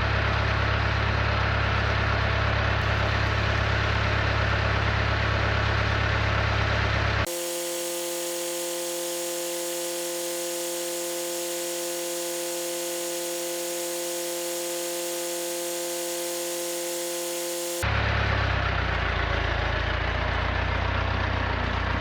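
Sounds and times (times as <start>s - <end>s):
steady mechanical whine: 7.3s - 17.8s.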